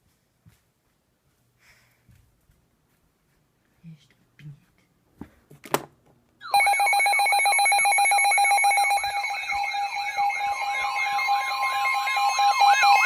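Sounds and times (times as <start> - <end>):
warbling electronic alarm tone: 6.4 - 13.0.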